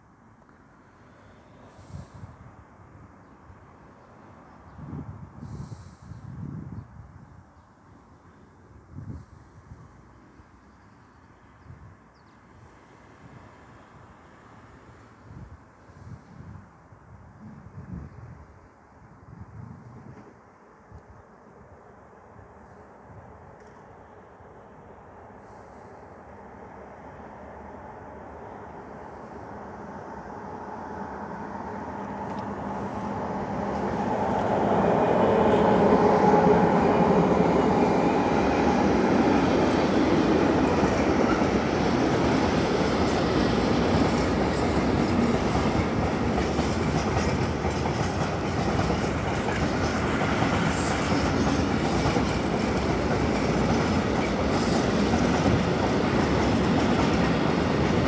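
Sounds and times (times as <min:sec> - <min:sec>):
electric locomotive passing: 0:23.1 - 0:58.0
wheels clacking over rail joints: 0:40.5 - 0:58.0.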